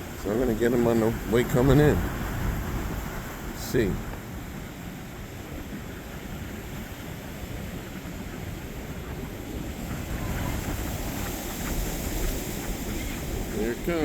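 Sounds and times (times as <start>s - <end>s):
ocean surf: 0.0s - 14.0s
wind: 0.0s - 14.0s.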